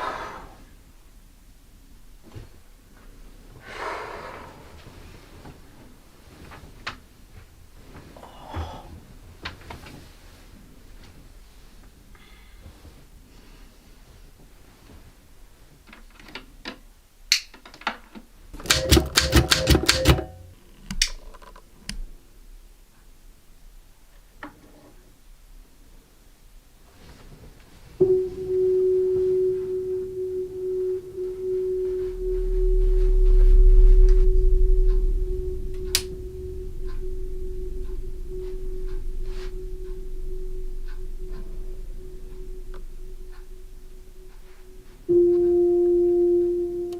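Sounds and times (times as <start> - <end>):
typewriter keys striking: 18.7 - 20.3
deep low rumble: 28.0 - 46.9
steady pure hum tone: 28.0 - 46.9.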